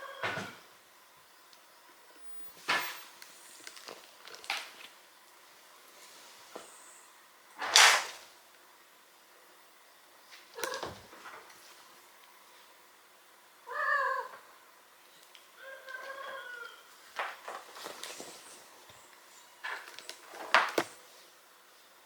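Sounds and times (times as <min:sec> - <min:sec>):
cat meowing: 0:13.7 - 0:14.4, 0:15.6 - 0:16.8
rustling: 0:16.9 - 0:21.4.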